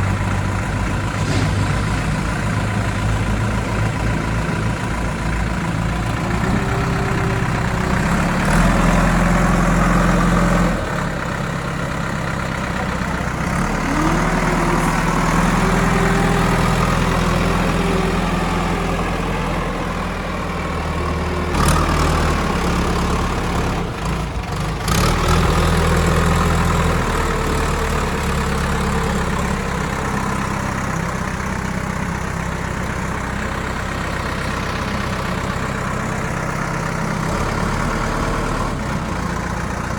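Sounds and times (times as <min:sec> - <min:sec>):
diesel engine revving under load: 0:00.0 - 0:39.9
sharp knocks: 0:01.0 - 0:04.1.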